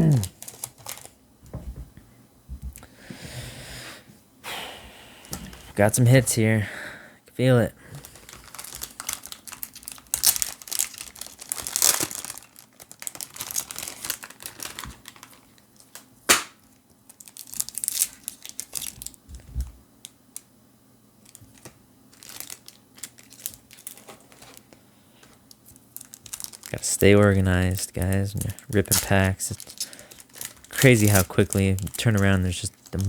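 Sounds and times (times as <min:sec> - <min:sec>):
foil wrapper tearing and crinkling: 0:00.0 - 0:01.2, 0:08.0 - 0:19.2, 0:21.2 - 0:24.8, 0:25.7 - 0:33.0
sharp snap: 0:16.3 - 0:16.6.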